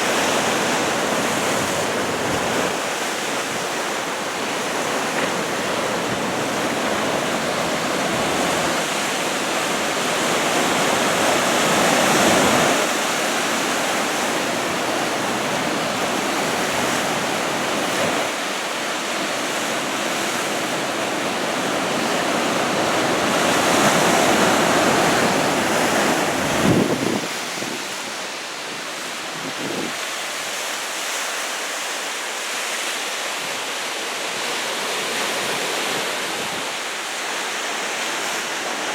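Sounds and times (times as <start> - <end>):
surf breaking on shore: 0.0 - 38.9
wind buffeting microphone: 23.6 - 28.1.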